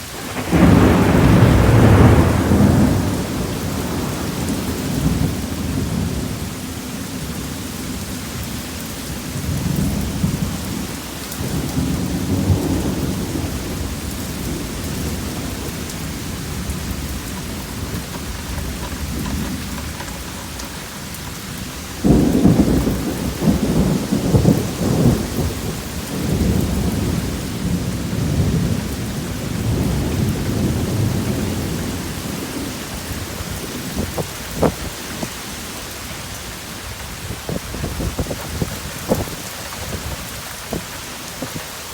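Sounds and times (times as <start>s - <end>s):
thunder rumbling: 0.0s - 8.1s, 9.3s - 41.7s
steady rain: 0.0s - 41.9s.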